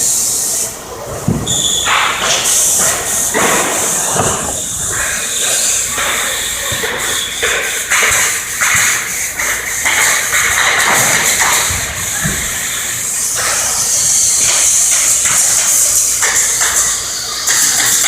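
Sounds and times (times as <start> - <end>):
steady high hiss: 0.0 - 18.0.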